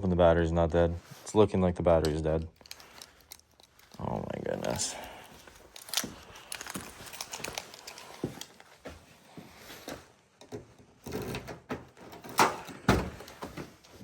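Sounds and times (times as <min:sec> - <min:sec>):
clicks and knocks of handling: 0:02.0 - 0:08.8.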